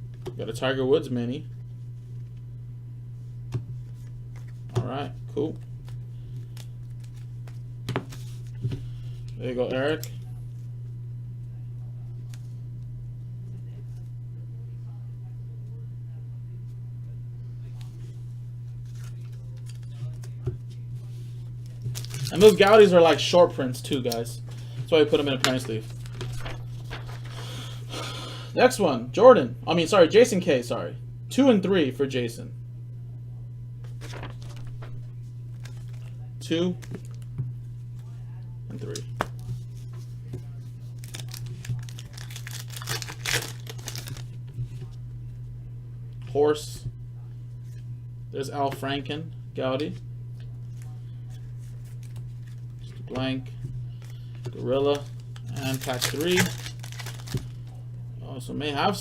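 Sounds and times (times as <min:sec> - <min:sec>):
low electrical hum: 0:00.0 - 0:59.0
trading cards rustling: 0:05.4 - 0:10.2, 0:18.7 - 0:28.1, 0:33.8 - 0:37.3, 0:38.7 - 0:44.4, 0:50.7 - 0:53.1, 0:53.9 - 0:57.8
card pack wrapper tearing and crinkling: 0:21.7 - 0:23.2, 0:24.0 - 0:27.6, 0:33.9 - 0:35.0, 0:35.6 - 0:36.1, 0:40.9 - 0:44.4, 0:54.9 - 0:57.6.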